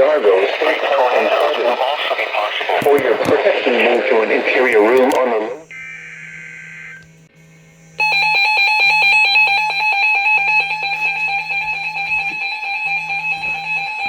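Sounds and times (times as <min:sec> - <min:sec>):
harsh electronic alarm tone: 0:00.0 - 0:07.2, 0:08.0 - 0:14.0.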